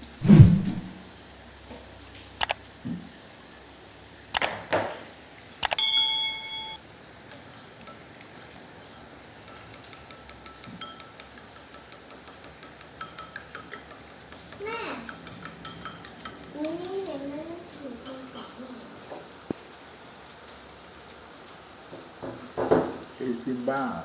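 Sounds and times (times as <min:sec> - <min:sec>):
ringing clink: 0:05.6 - 0:08.0, 0:08.8 - 0:11.4.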